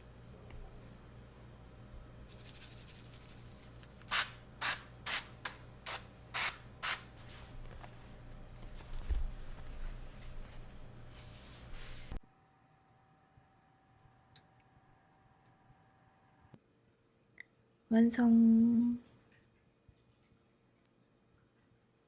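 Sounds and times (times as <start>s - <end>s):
spray bottle hissing sprays: 2.3s - 7.4s.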